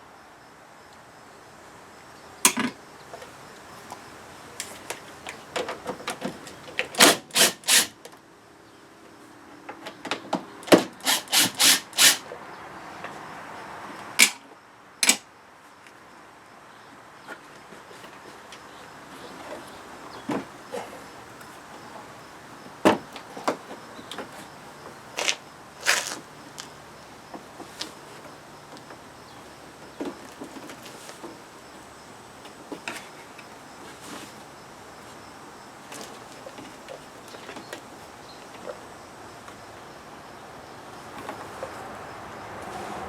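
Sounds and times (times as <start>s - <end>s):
hand tools clicking and knocking: 4.6s - 7.9s, 10.1s - 12.2s, 15.0s - 15.2s.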